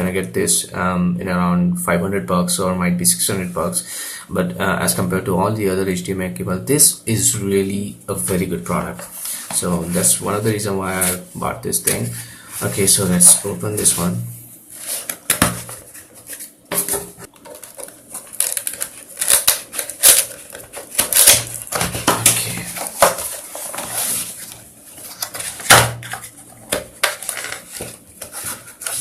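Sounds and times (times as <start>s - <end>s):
packaging crinkling: 14.8s - 29.0s
box being pried open: 18.4s - 23.3s.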